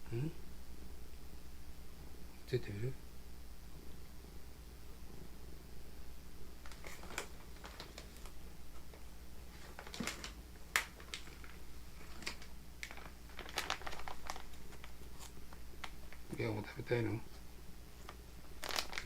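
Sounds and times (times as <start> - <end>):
pet crunching food: 9.6 - 16.4, 18.0 - 19.0.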